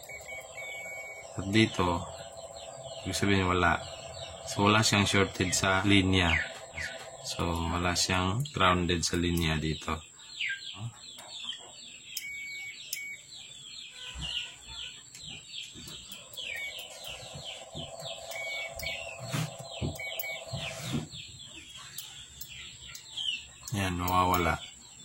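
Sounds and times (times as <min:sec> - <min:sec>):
multimeter buzzer beeps: 0:00.0 - 0:08.6, 0:12.2 - 0:14.4, 0:16.0 - 0:21.2
low hum: 0:00.0 - 0:09.6, 0:16.1 - 0:21.2
birds chirping: 0:00.0 - 0:25.0.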